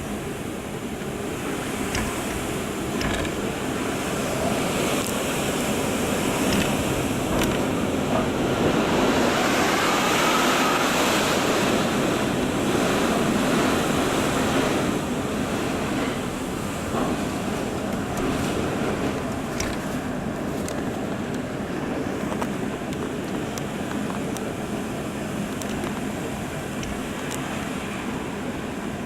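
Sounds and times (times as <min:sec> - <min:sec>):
storm wind roaring: 0:00.0 - 0:29.0
faint wind whistle: 0:08.9 - 0:11.9.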